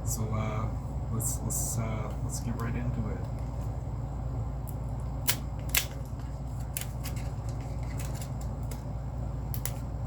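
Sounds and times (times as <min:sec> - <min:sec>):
low steady hum: 0:00.0 - 0:10.0
foil packet crinkling: 0:05.3 - 0:08.9.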